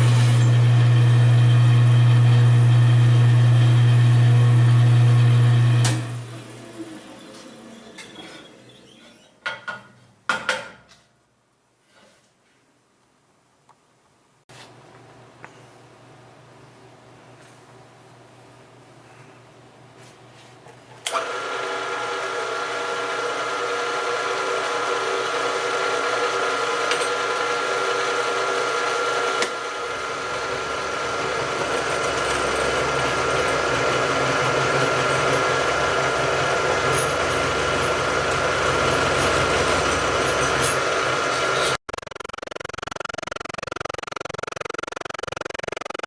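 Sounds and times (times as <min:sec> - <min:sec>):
electric machine tool motor whining: 0:00.0 - 0:07.4, 0:21.1 - 0:46.0.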